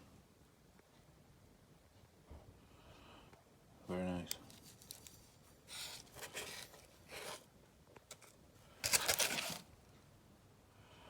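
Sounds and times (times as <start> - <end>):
packaging rustling and crinkling: 4.4 - 7.5, 8.1 - 9.7.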